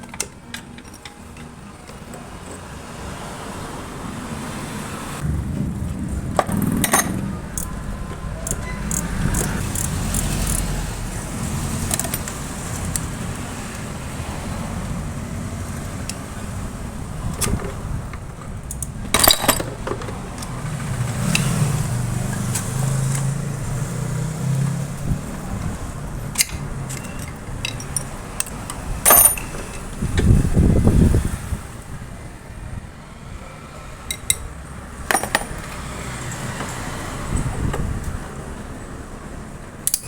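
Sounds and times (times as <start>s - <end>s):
metal tools clinking on engine: 0.0s - 2.7s, 8.4s - 10.8s, 11.8s - 13.1s, 17.3s - 23.3s, 26.3s - 30.2s, 34.1s - 37.8s, 39.8s - 40.0s
low steady rumble: 5.2s - 10.0s
loud metallic clanks: 5.2s - 10.7s, 34.1s - 35.9s.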